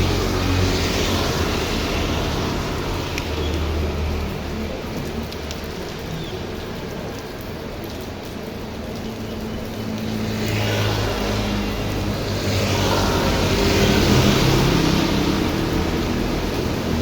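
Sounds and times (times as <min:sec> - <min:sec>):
heavy rain falling: 0:00.0 - 0:17.0.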